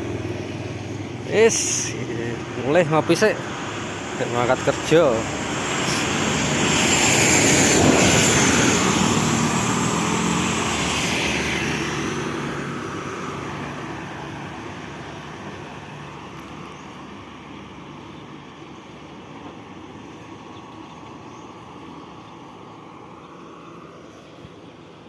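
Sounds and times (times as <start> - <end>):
motor engine passing by: 0.0 - 16.8.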